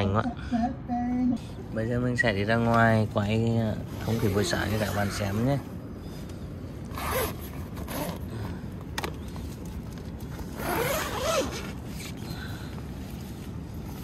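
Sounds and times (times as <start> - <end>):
tent zipper being pulled: 3.9 - 5.5, 6.8 - 8.2, 10.4 - 12.2.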